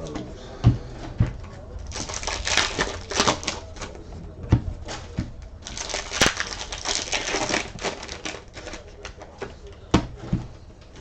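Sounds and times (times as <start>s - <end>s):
card wrappers crinkling: 5.8s - 7.3s.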